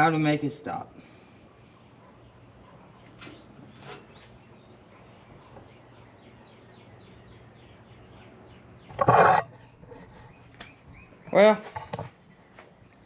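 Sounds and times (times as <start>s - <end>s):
bird trilling: 8.8s - 11.9s.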